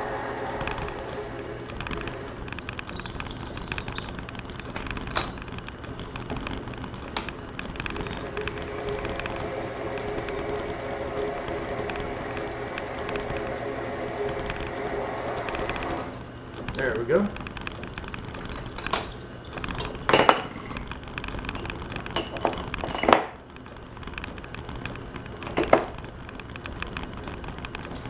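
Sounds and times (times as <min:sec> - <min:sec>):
metal-cutting machine whine: 0:00.0 - 0:04.8, 0:06.3 - 0:16.7.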